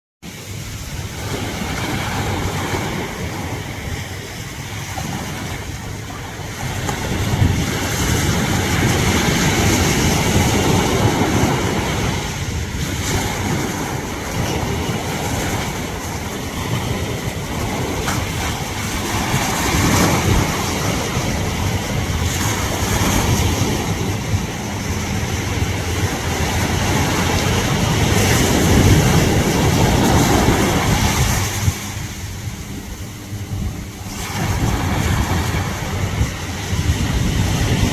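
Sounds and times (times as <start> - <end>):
wind buffeting microphone: 0.2 - 37.9
surf washing onto beach: 0.3 - 37.9.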